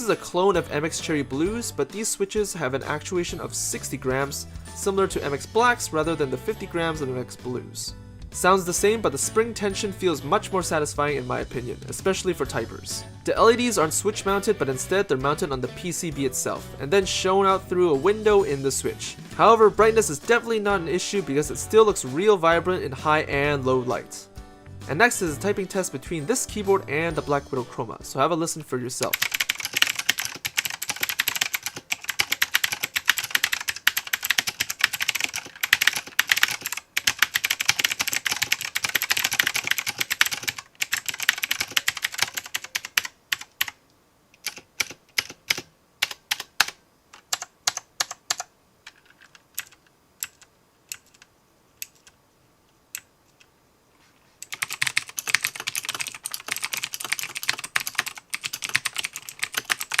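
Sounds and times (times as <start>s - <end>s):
mechanical keyboard typing: 29.0s - 43.8s, 44.4s - 52.2s, 54.4s - 60.0s.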